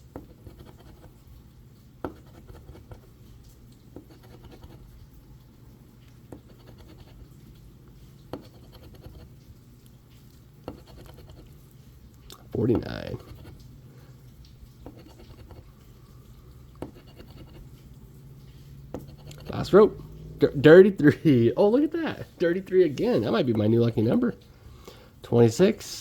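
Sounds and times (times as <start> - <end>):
scratching lottery ticket: 0.1 - 1.4, 2.0 - 5.2, 6.2 - 9.5, 10.2 - 13.7, 14.7 - 20.0.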